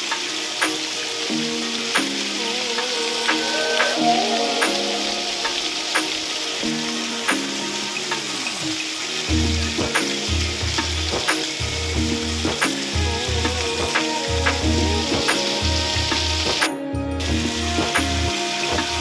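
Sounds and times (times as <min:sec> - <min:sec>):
steady hiss: 0:00.0 - 0:19.0
music with pulsing bass beat: 0:09.3 - 0:19.0.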